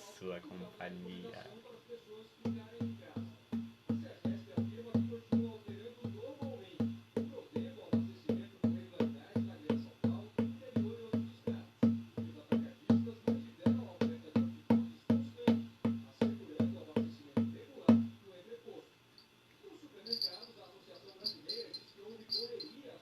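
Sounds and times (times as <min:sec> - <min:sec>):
drum beaten steadily: 0:02.4 - 0:18.2.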